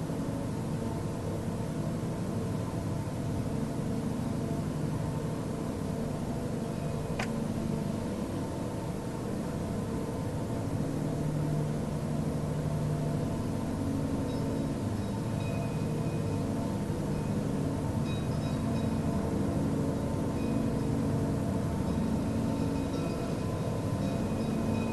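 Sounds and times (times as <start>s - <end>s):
steady low drone with hiss: 0.0s - 24.9s.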